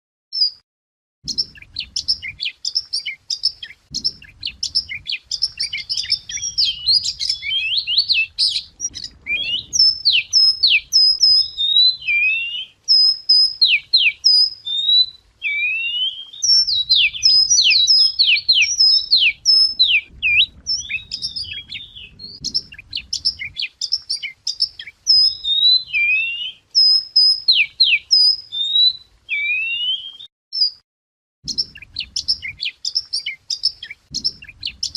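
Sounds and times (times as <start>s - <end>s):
songbird singing: 0.4s - 0.6s, 1.2s - 30.8s, 31.4s - 34.9s
low background rumble: 3.9s - 11.0s.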